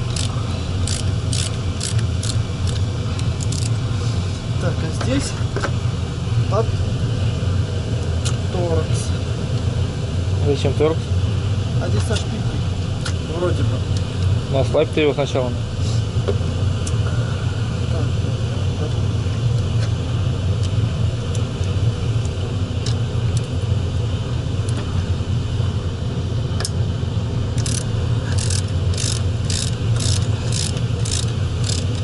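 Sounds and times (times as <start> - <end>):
socket wrench ratcheting clicks: 0.0 - 3.8, 27.6 - 32.0
steady low rumble: 0.0 - 32.0.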